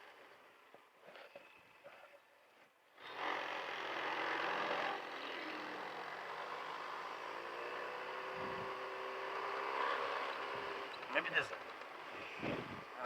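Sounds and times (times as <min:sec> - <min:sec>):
scooter engine pulling away: 0:03.1 - 0:11.1
wind noise: 0:12.2 - 0:12.9.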